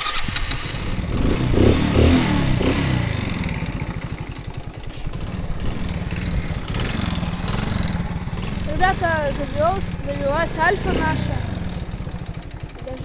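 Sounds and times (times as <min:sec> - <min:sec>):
moped engine idling: 0:00.0 - 0:13.0
moped engine revving: 0:00.0 - 0:13.0.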